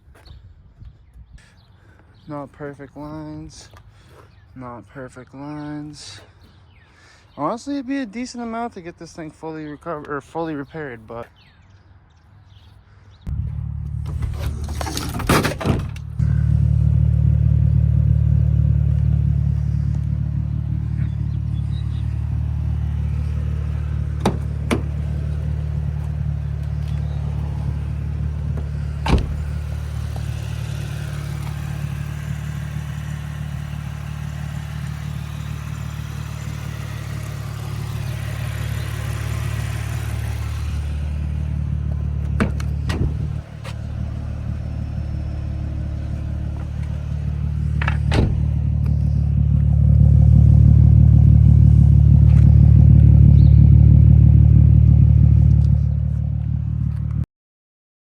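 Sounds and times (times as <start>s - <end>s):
car engine idling: 13.3s - 57.1s.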